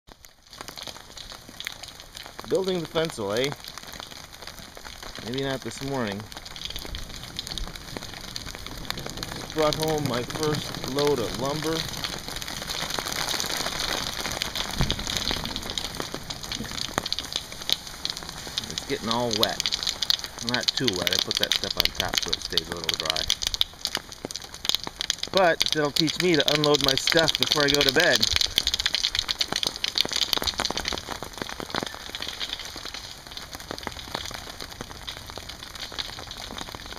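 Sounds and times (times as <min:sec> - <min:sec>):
raindrops ticking on a surface: 0:00.1 - 0:36.9
steady rain: 0:00.1 - 0:36.9
low thump: 0:14.7 - 0:15.1.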